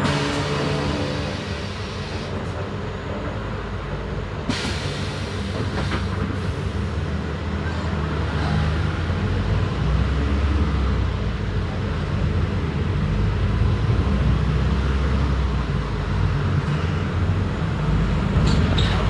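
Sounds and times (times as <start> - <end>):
bus diesel engine running: 0.0 - 8.2
road rumble: 0.0 - 19.0.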